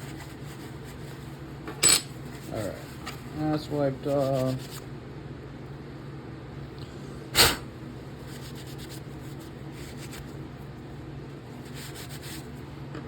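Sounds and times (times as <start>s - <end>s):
paper towel wiping knife: 3.9s - 4.8s, 8.2s - 10.4s, 11.6s - 12.6s.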